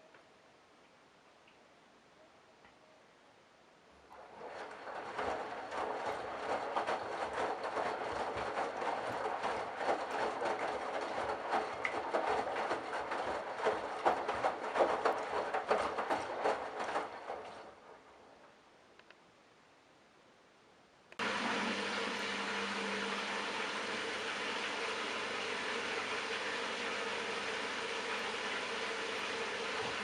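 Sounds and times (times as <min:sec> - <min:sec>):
washing machine drum turning: 0:04.2 - 0:17.7
water sloshing: 0:04.2 - 0:18.3
laundry knocking in drum: 0:04.8 - 0:17.5.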